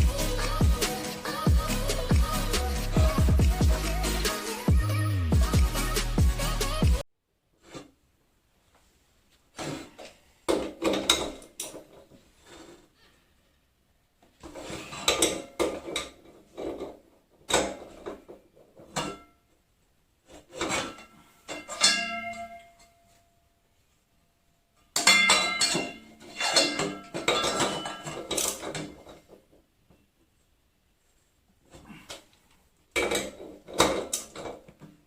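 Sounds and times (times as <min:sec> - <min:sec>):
metal tools clattering and scraping: 0:14.4 - 0:19.4, 0:20.3 - 0:23.2, 0:24.8 - 0:29.4
metal piece ringing: 0:21.7 - 0:22.9.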